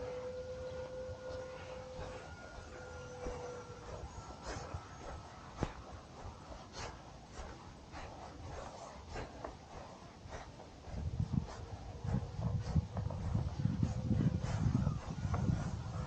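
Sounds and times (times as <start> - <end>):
distant model plane motor hum: 0.0 - 7.6, 10.9 - 16.0
wind rumbling on microphone: 0.0 - 16.0.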